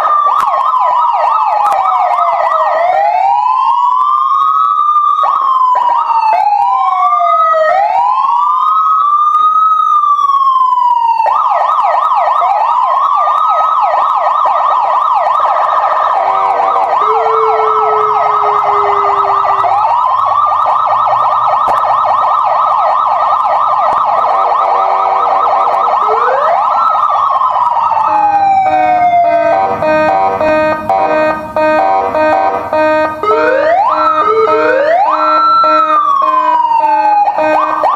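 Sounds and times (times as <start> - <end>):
electronic siren wail and yelp: 0.0 - 37.9
stepped beeping tune: 16.2 - 20.8, 28.1 - 36.6, 37.4 - 37.9.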